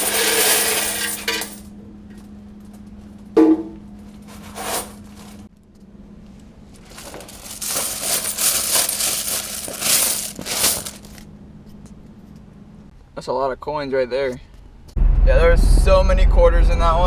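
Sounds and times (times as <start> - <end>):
coins clattering and jingling: 0.0 - 1.6, 6.8 - 11.2.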